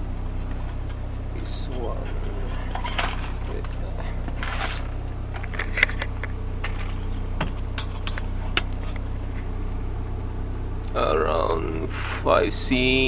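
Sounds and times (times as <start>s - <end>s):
steady low hum: 0.0s - 13.0s
objects clicking and scraping: 0.4s - 9.5s.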